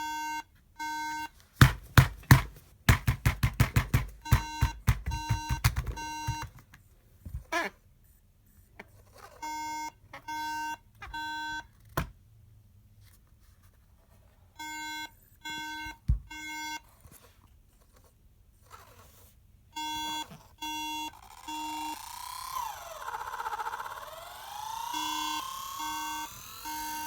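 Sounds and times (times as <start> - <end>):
short electronic beeps: 24.0 - 27.0.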